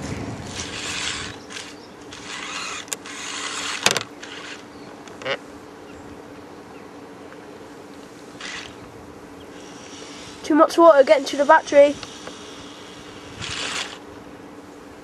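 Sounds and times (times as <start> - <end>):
faint steady hum: 0.0 - 15.0
remote-control car rushing: 13.3 - 14.0.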